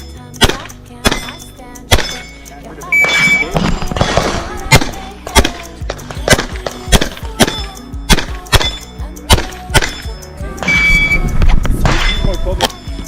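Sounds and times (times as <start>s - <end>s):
pistol shots: 0.4s - 2.3s, 3.0s - 10.1s.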